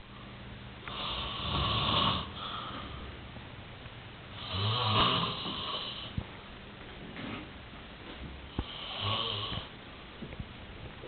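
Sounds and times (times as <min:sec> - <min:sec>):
person snoring: 0:00.9 - 0:03.0, 0:04.4 - 0:06.2, 0:08.6 - 0:09.7.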